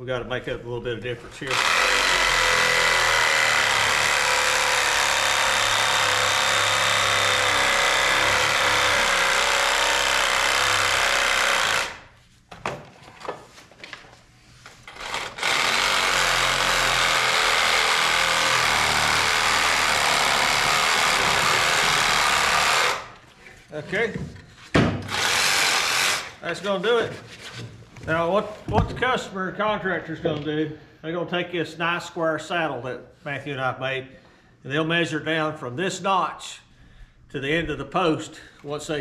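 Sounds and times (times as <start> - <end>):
power saw cutting wood: 1.4 - 12.1, 14.9 - 23.2, 25.0 - 26.4.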